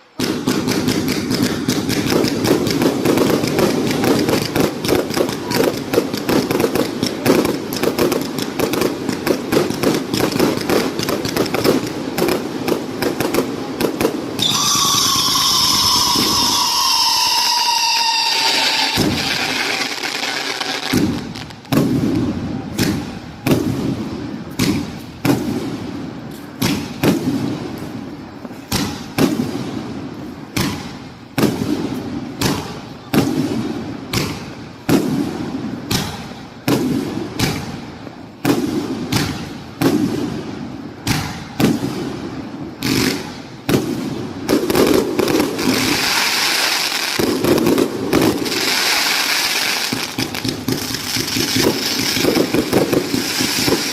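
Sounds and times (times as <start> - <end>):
hissing crackling fireworks: 0.0 - 53.9
firework cake bangs: 0.2 - 25.8, 26.5 - 27.6, 30.5 - 42.1.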